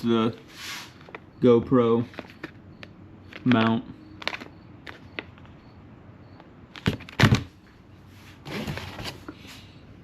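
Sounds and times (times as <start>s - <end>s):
packaging rustling: 3.3s - 5.4s.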